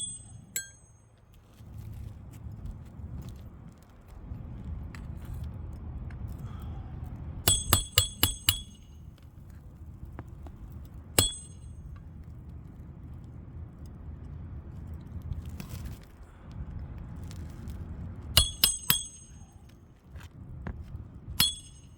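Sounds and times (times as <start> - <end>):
hatchet striking nails: 7.5 - 9.0, 11.2 - 11.7, 18.4 - 19.7, 21.4 - 21.9.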